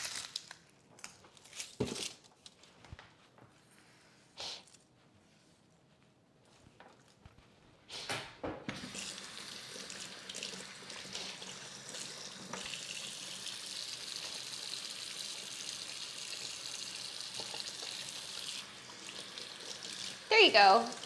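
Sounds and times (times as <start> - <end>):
kitchen tap running into sink: 8.7 - 21.0.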